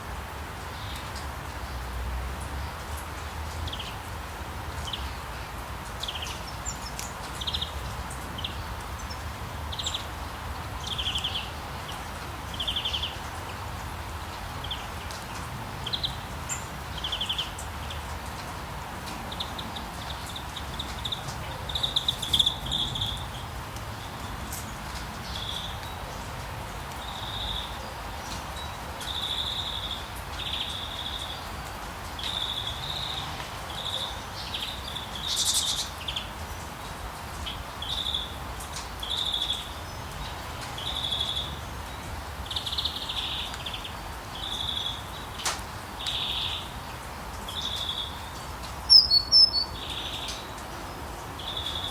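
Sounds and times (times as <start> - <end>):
rain hiss: 0.0 - 51.9
songbird chirping: 19.2 - 26.0, 39.0 - 51.9.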